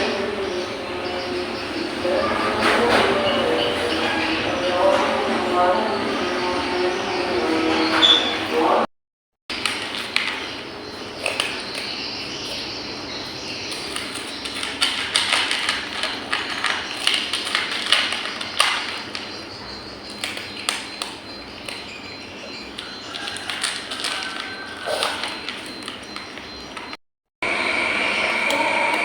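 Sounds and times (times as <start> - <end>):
cat chewing food in bowl: 13.7 - 26.9.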